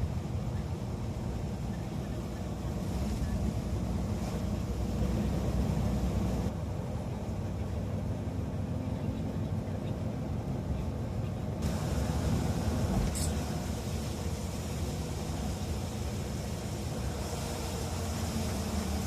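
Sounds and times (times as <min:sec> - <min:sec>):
high hiss: 0:11.6 - 0:19.0.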